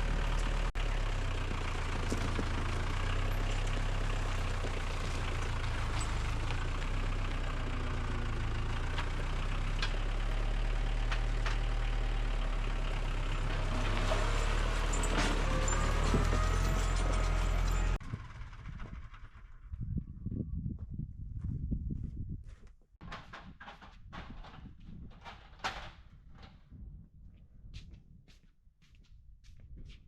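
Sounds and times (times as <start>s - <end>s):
low engine hum: 0.0s - 22.4s.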